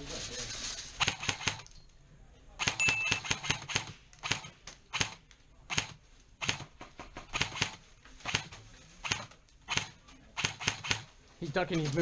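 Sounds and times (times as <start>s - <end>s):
airsoft gun shots: 2.6s - 11.1s.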